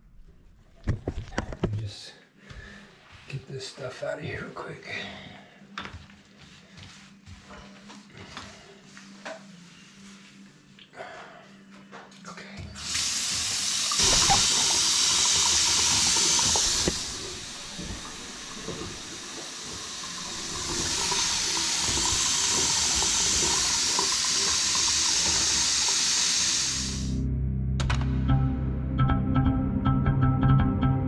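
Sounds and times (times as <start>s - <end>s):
faucet running water into basin: 12.8s - 27.2s.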